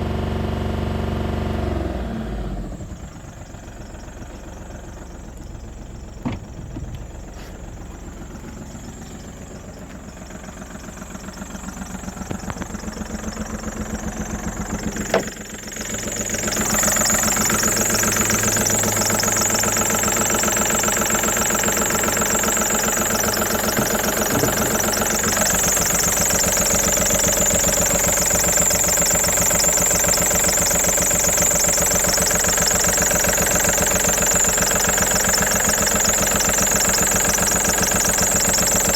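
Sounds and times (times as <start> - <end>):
diesel engine idling clatter: 0.0 - 38.9
sharp engine knock: 11.3 - 38.9.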